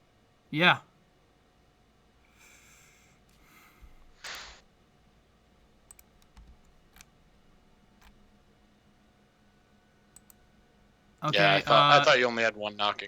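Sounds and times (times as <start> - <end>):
person breathing: 2.3 - 4.6
faint clicks: 5.9 - 7.1, 10.1 - 10.5.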